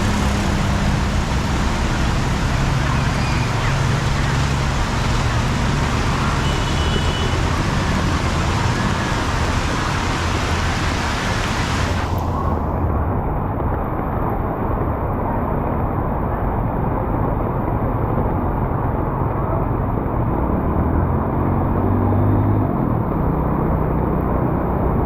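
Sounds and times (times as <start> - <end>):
vehicle engine humming: 0.0 - 13.7
noisy street background: 0.0 - 25.0.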